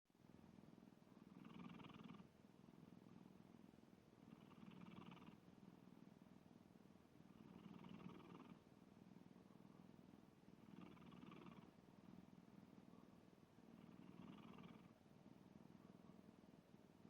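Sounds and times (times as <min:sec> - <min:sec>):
cat snoring: 0:01.2 - 0:02.3, 0:04.2 - 0:05.4, 0:07.3 - 0:08.7, 0:10.6 - 0:11.8, 0:13.6 - 0:15.0.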